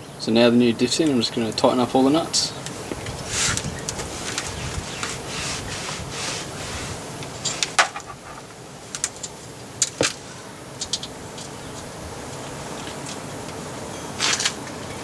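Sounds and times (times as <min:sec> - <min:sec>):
hand tools scraping and rattling: 0:02.6 - 0:11.9.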